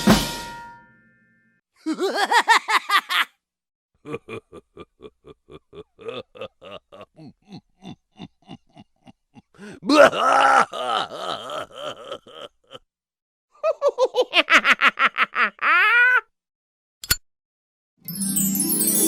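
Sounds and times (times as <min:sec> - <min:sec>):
drum hit ringing: 0:00.0 - 0:00.9
cartoon laughter: 0:01.8 - 0:03.4, 0:04.0 - 0:12.9, 0:13.6 - 0:16.3.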